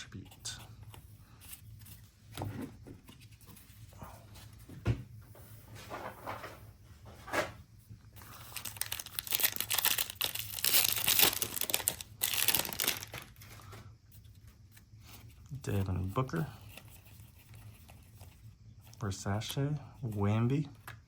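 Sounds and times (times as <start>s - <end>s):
plastic wrapper tearing and crinkling: 8.3s - 13.4s.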